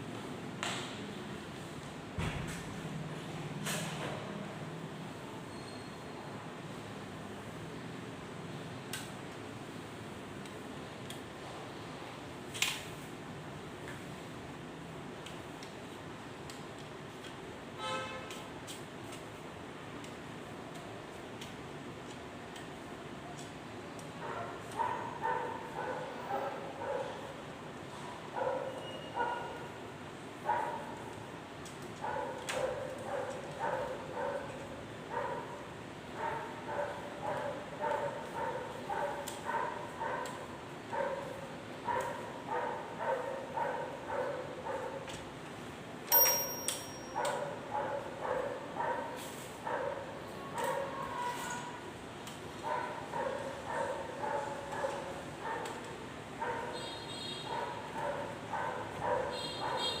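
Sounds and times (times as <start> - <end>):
dog barking: 24.2 - 27.3, 28.3 - 29.7, 30.5 - 31.0, 32.0 - 45.1, 47.2 - 51.7, 52.6 - 60.0.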